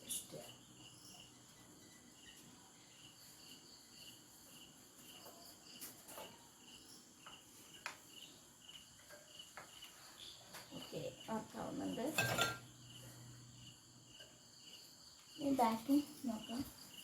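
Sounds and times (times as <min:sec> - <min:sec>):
crickets chirping: 0:00.0 - 0:17.0
high insect hum: 0:00.0 - 0:17.0.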